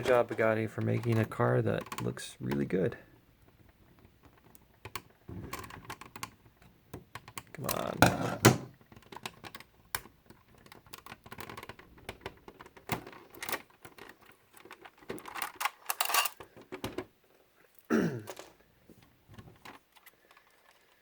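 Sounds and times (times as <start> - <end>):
clicks and taps of model car parts: 0.0 - 2.7, 3.4 - 17.1.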